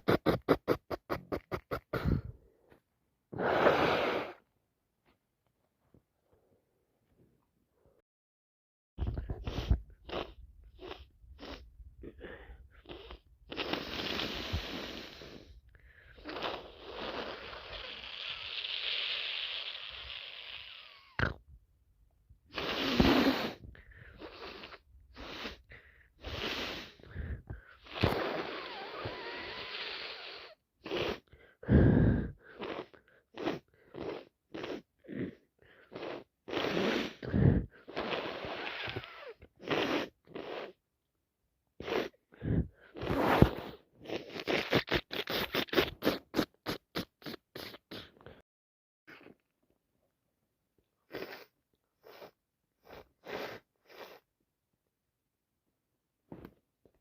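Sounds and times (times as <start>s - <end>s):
person blowing nose: 0.0s - 2.4s, 3.3s - 4.5s, 9.0s - 21.2s, 22.5s - 40.8s, 41.8s - 48.4s, 51.1s - 54.3s
person sniffing: 0.0s - 2.4s, 3.3s - 4.5s, 9.0s - 21.2s, 22.5s - 40.8s, 41.8s - 48.4s, 51.1s - 54.3s.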